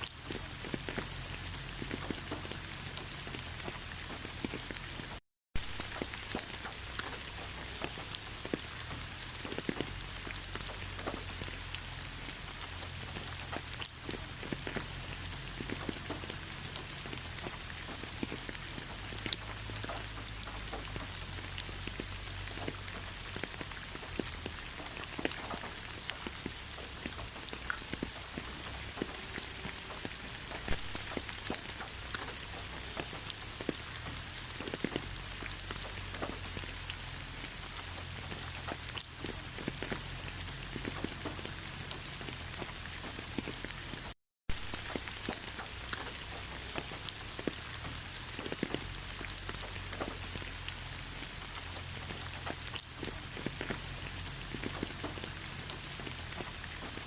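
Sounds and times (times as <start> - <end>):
rain falling: 0.0 - 57.0.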